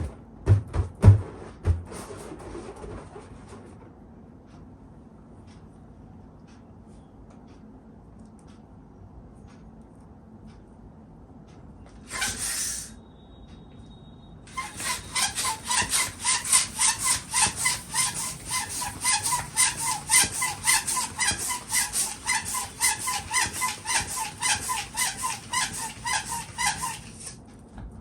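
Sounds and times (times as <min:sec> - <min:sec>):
hand pump strokes: 0:12.1 - 0:12.9, 0:14.5 - 0:27.4.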